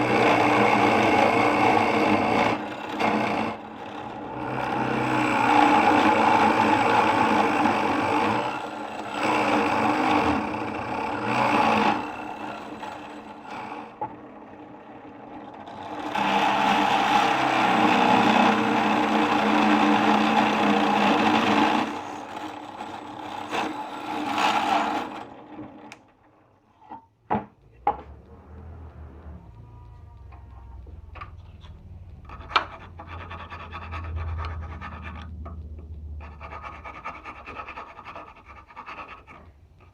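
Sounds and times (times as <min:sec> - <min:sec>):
electric drill boring into wood: 0:00.0 - 0:14.0, 0:14.8 - 0:26.0.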